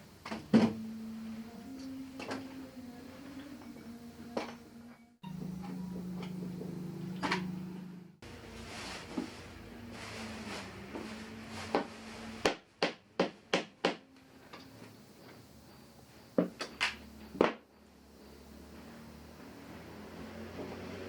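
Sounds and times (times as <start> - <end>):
low workshop hum: 0.0 - 21.0.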